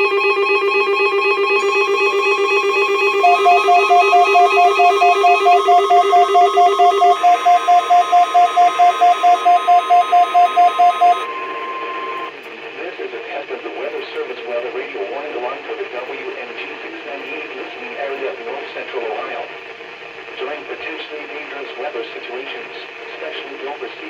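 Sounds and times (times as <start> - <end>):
low warble: 0.0 - 12.2
fast beeping: 0.0 - 12.3
steady alert tone: 0.0 - 12.3
weather radio alarms beeping: 0.0 - 12.3.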